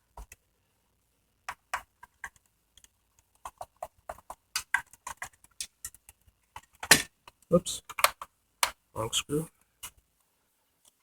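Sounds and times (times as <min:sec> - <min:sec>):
plastic parts and screws clicking: 0:01.5 - 0:08.8.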